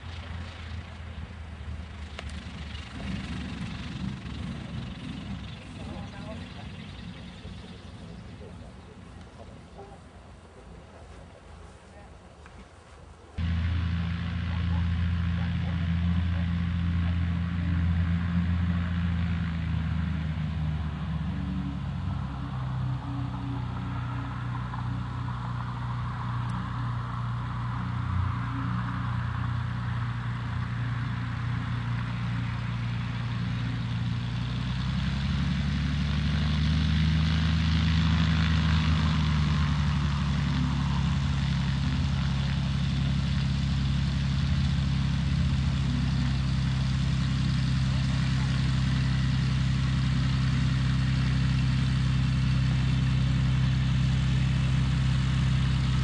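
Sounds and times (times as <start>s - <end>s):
airplane propeller engine drone: 0.0s - 56.0s.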